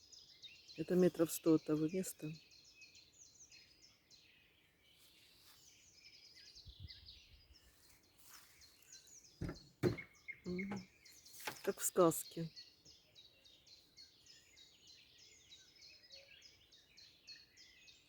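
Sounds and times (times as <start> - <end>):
songbirds chirping: 0.0 - 18.0
knocks: 9.4 - 10.9.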